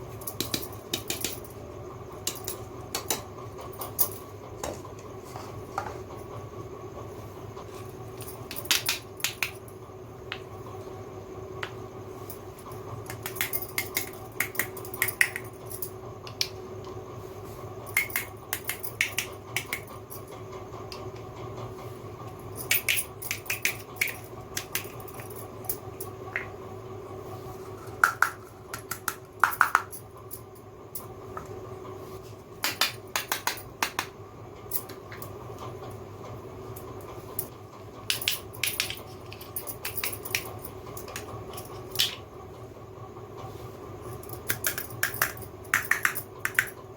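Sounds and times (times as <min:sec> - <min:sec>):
faint steady hum: 0:00.0 - 0:46.9.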